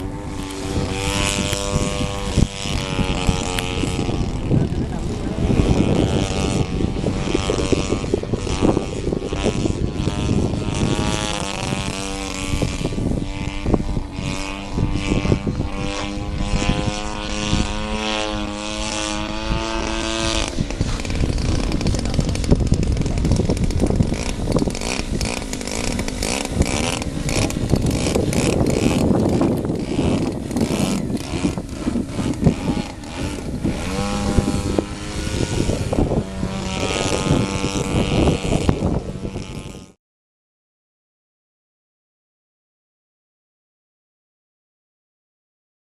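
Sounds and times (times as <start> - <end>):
model airplane engine and propeller: 0.0 - 40.0
wind buffeting microphone: 0.0 - 40.0.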